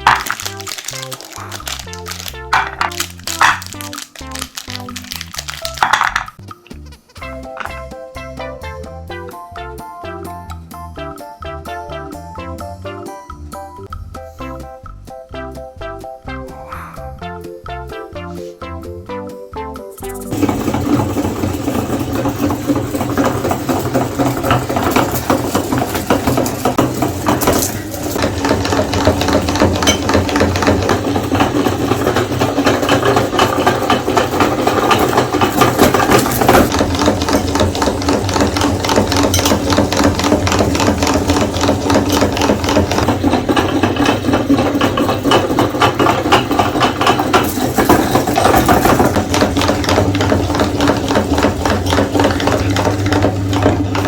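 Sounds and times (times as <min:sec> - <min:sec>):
crackling and rattling grinding: 0:00.0 - 0:08.8, 0:20.0 - 0:54.0
meat grinder motor hum: 0:20.3 - 0:54.0.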